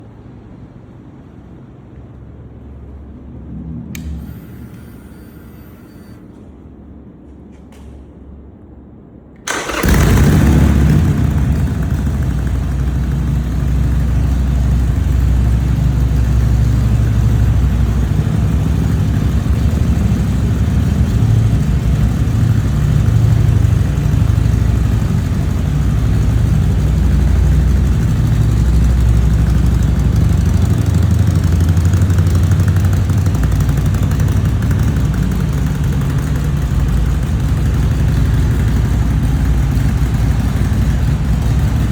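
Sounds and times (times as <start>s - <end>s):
motorcycle engine starting and idling: 3.9s - 6.6s, 9.4s - 41.9s.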